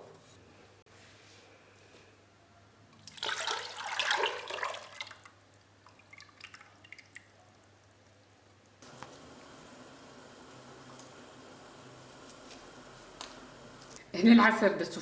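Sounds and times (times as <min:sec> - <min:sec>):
liquid pouring into a pot: 0:03.0 - 0:07.4.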